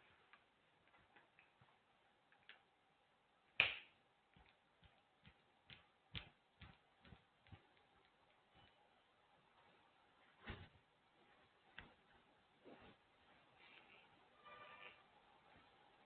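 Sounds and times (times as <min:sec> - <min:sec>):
faint clicks and taps: 0:00.2 - 0:02.7, 0:03.6 - 0:08.8, 0:10.4 - 0:13.0.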